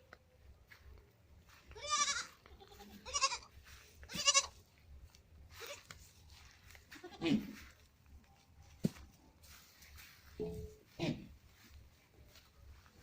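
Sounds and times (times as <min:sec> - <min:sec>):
goats bleating: 0:01.7 - 0:04.6, 0:05.5 - 0:05.9, 0:06.9 - 0:07.6.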